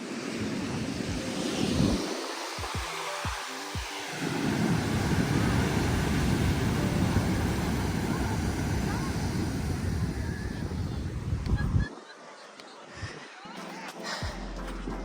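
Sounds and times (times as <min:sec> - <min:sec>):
wind buffeting microphone: 0:03.8 - 0:12.0.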